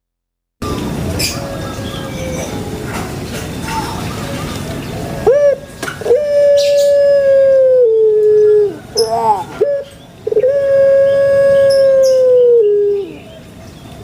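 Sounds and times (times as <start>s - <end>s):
dove cooing: 5.1s - 13.4s.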